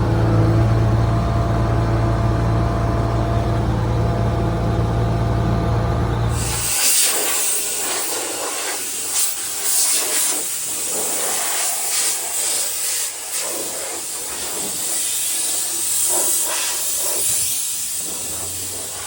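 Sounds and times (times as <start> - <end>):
rushing air hiss: 6.3 - 19.0.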